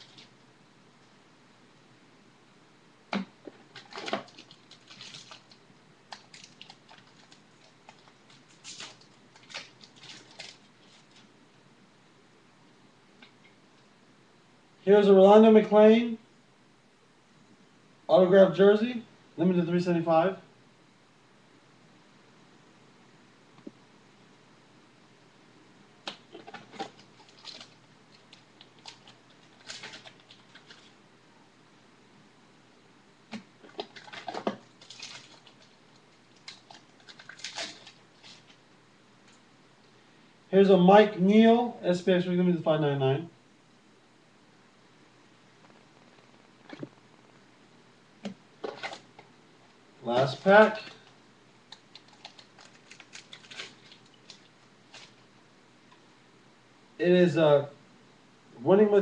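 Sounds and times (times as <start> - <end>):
cards and foil wrappers rustling: 4.0 - 11.3, 26.3 - 31.0, 33.6 - 38.6, 50.1 - 51.1, 51.7 - 55.3
trading cards rustling and clicking: 51.7 - 55.2.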